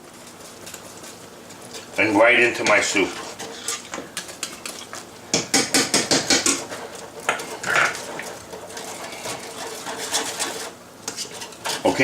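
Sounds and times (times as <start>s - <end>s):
whisk clicking against pot: 2.6s - 12.0s.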